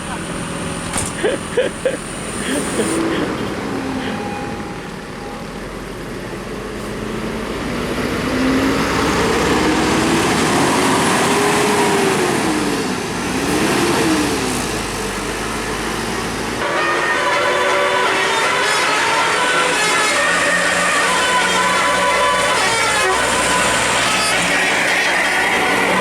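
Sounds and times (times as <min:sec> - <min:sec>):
bus engine climbing: 0:00.0 - 0:26.0
road noise: 0:00.0 - 0:26.0
multi-tone bus horn: 0:02.4 - 0:05.8, 0:16.6 - 0:26.0.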